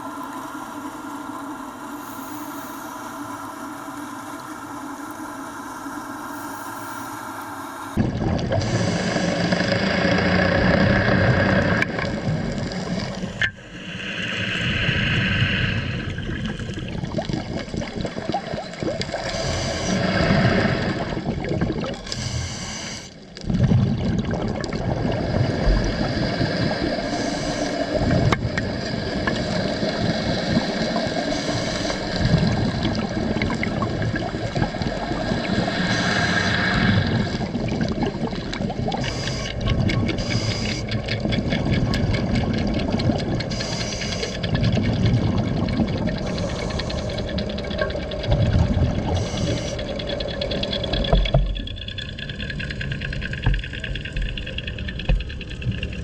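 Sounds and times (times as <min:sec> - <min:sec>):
steady hum: 0:00.0 - 0:56.0
water gurgling and splashing: 0:08.0 - 0:56.0.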